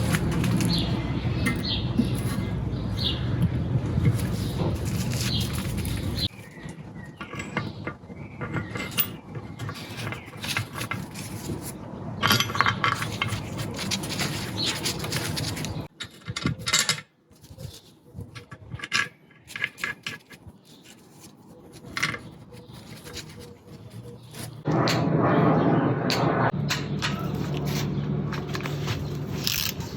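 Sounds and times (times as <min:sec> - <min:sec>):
metal tools clinking and clattering: 0:00.0 - 0:02.6, 0:04.0 - 0:24.6.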